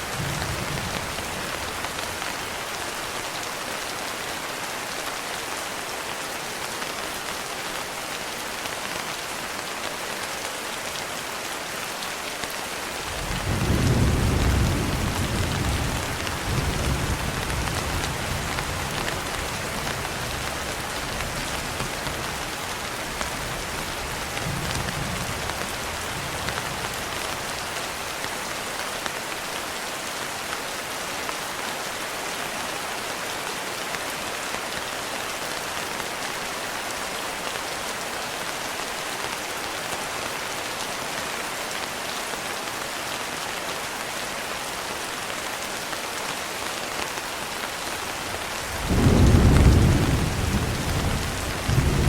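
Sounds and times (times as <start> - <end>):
steady rain: 0.0 - 52.0
thunder rumbling: 48.6 - 52.0.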